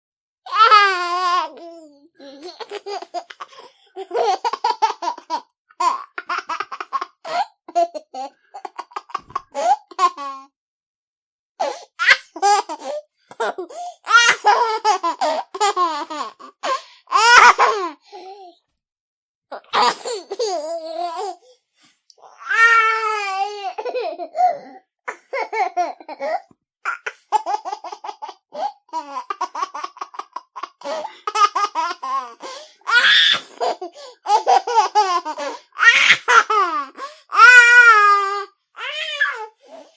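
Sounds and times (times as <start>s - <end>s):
baby laughing: 0.5s - 10.5s, 11.7s - 17.9s, 19.5s - 21.4s, 22.5s - 24.4s, 25.1s - 39.4s.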